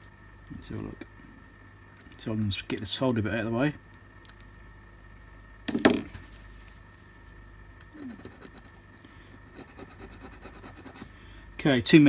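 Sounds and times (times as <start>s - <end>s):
steady electrical hum: 0.0s - 12.0s.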